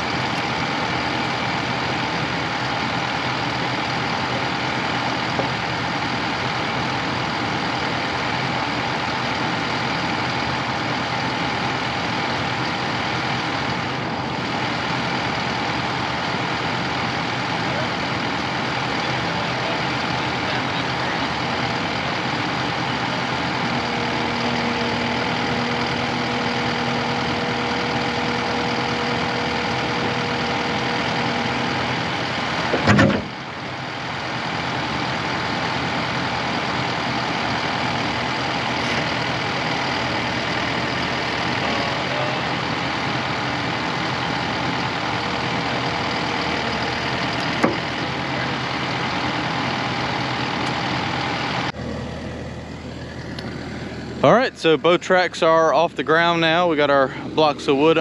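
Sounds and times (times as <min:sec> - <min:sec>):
diesel engine running: 0:00.0 - 0:58.0
whining tone: 0:00.0 - 0:58.0.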